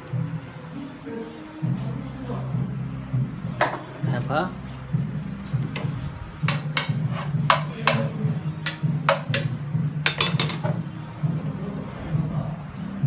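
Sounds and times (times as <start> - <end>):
steady low hum: 1.6 - 6.5.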